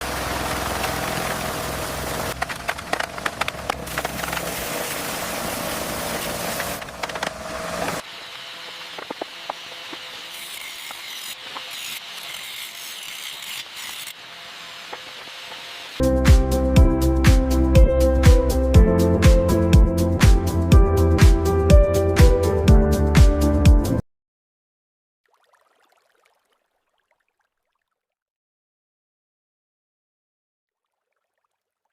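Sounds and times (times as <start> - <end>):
sawing-like rasping: 9.0 - 14.2.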